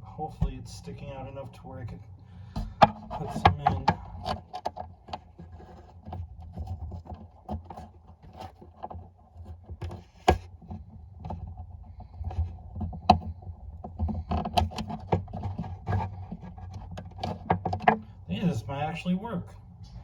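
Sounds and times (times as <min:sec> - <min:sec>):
tool clicking inside guitar body: 0:12.2 - 0:18.0.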